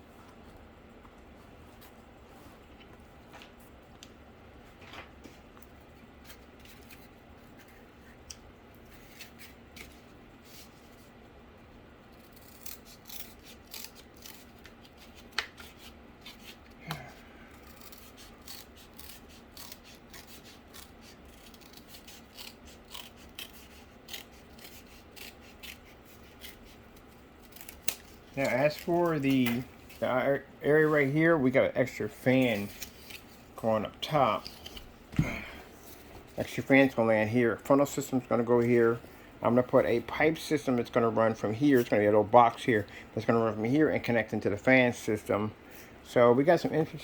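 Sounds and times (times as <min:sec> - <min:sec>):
faint steady hum: 0:00.0 - 0:47.0
hands working on cardboard: 0:17.6 - 0:30.0.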